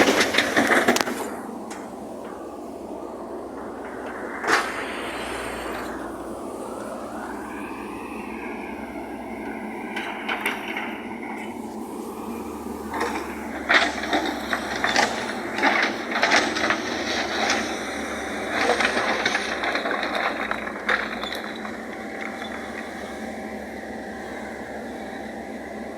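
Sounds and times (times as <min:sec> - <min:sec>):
construction machinery running: 0:00.0 - 0:25.9.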